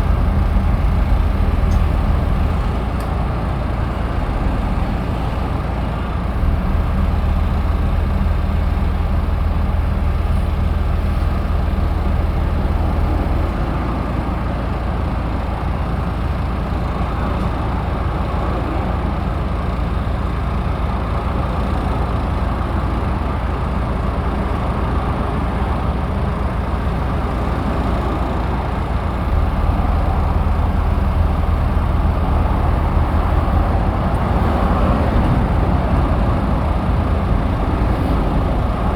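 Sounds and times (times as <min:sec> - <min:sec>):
heavy engine humming: 0:00.0 - 0:38.9.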